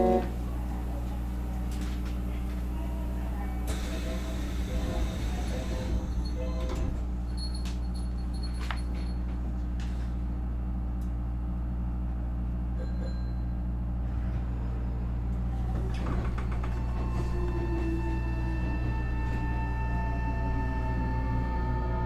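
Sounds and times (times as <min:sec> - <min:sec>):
electric train equipment hum: 0:00.0 - 0:07.4, 0:13.8 - 0:22.0.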